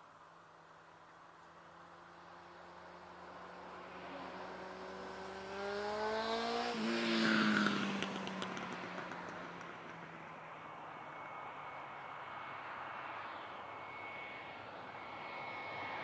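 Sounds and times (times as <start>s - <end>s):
vehicle engine accelerating past: 3.7s - 11.7s.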